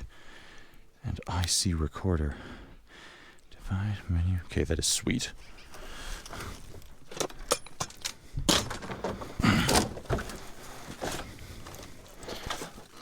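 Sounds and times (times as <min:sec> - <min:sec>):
objects rattling in a dumpster: 0:06.3 - 0:13.0.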